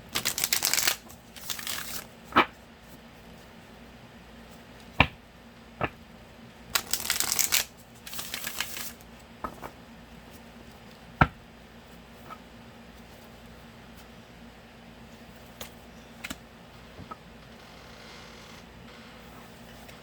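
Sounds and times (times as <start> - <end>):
cards riffling: 0.1 - 2.5, 6.8 - 9.7
cards sliding: 0.2 - 2.1, 6.8 - 9.6.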